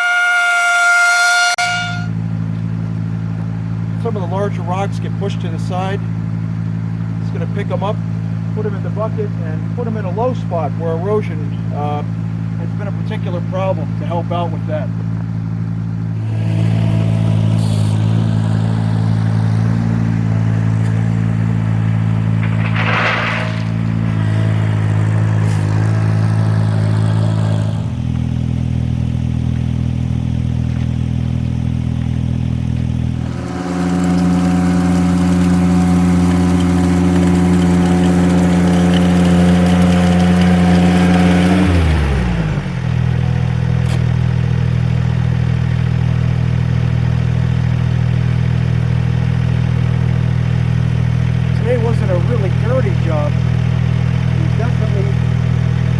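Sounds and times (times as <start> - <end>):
short scraping sound: 0.0 - 2.2, 22.3 - 24.6
tractor engine running: 0.0 - 55.9.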